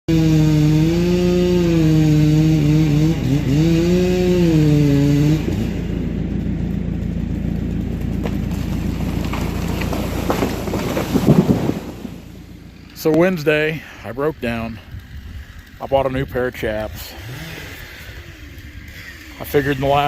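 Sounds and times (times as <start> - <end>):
chainsaw running at high revs: 0.1 - 13.0, 14.5 - 20.0
low steady rumble: 4.1 - 17.0.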